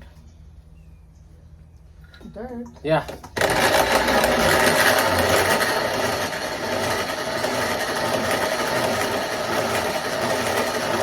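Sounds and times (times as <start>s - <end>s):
hand mill grinding peas: 3.1s - 11.0s.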